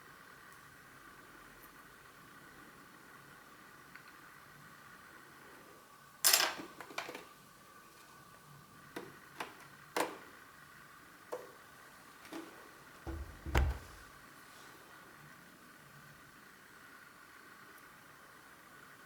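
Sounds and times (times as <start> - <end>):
heavy knock and low thump: 13.1 - 14.1
items clicking and knocking: 13.1 - 14.1.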